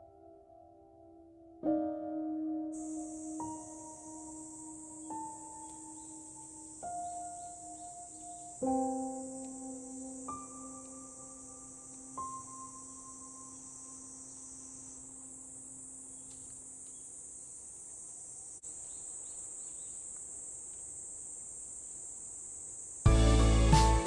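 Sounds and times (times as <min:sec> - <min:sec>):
music: 0:00.0 - 0:13.6, 0:23.1 - 0:24.0
high-pitched insect chorus: 0:02.8 - 0:24.0.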